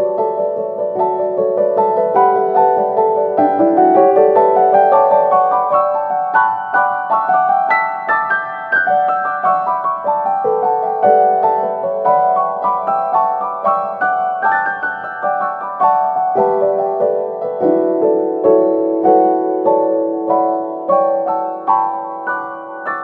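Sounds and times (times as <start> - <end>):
piano melody: 0.0 - 23.0.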